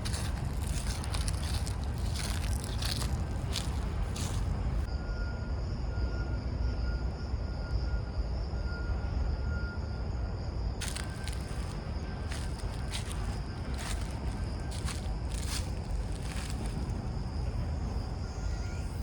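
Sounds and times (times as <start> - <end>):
footsteps crunching: 0.0 - 4.9, 10.8 - 17.6
low rumble: 0.0 - 4.9
faint whistle-like tone: 4.9 - 10.2.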